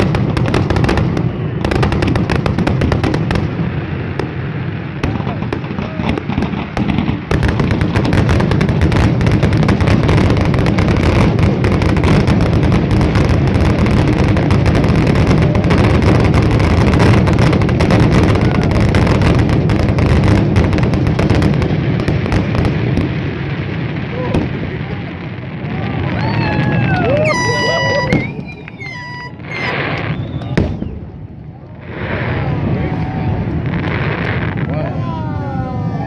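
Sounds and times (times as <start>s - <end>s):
fireworks barrage booming: 0.0s - 36.0s.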